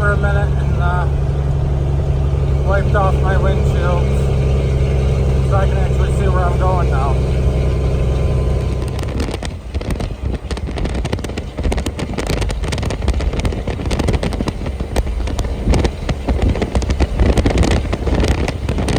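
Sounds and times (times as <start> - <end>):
truck engine rumbling: 0.0 - 18.9
crackling clicks: 7.2 - 18.9.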